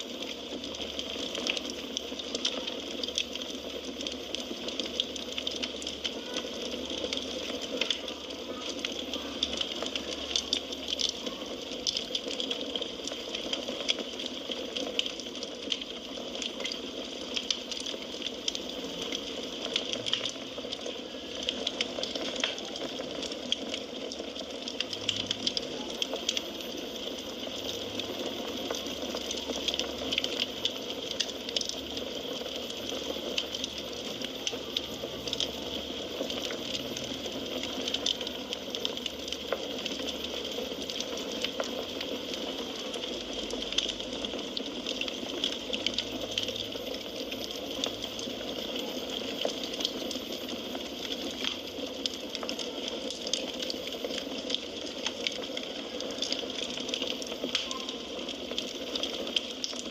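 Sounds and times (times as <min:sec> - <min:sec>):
fire crackles and pops: 0:00.0 - 0:59.9
firewood burning hiss: 0:00.0 - 0:59.9.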